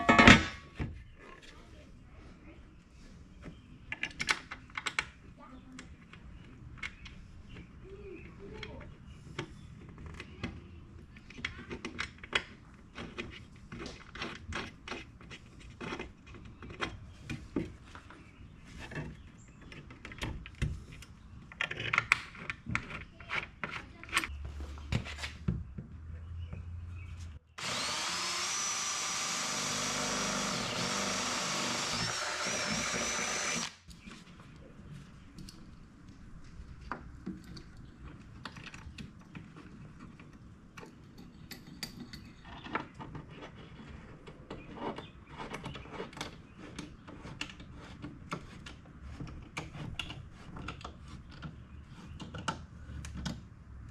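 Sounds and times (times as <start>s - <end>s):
power drill whining: 27.6s - 33.8s.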